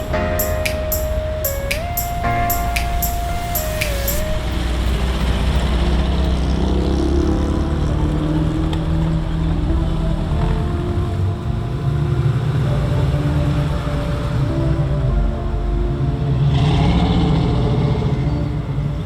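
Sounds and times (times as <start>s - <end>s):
vehicle engines driving past: 4.2s - 14.4s.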